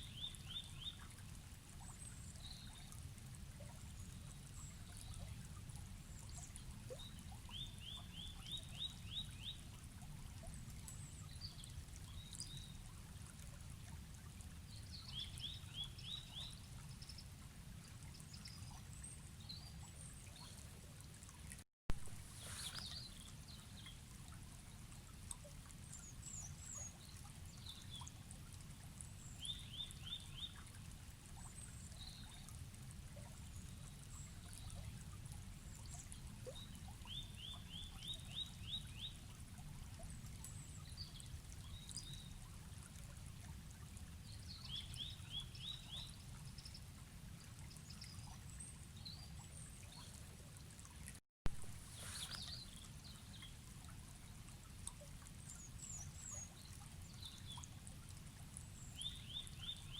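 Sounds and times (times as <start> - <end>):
river flowing: 22.0 - 24.6, 51.6 - 54.0.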